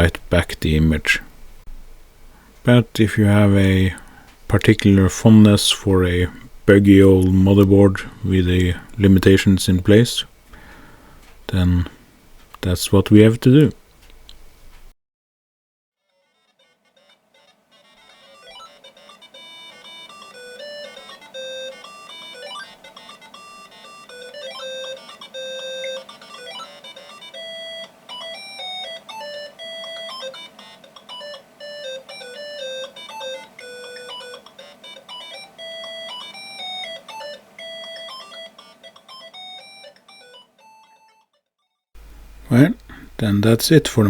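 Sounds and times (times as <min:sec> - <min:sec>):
electronic synth melody: 0:17.4 - 0:41.2.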